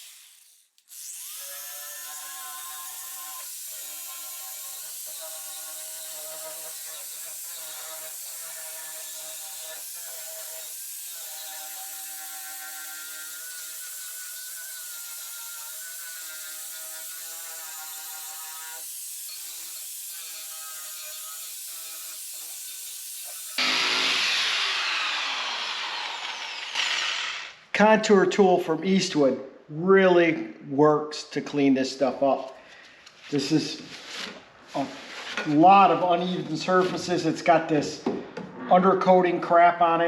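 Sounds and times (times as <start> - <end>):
power tool whining: 16.6 - 27.6.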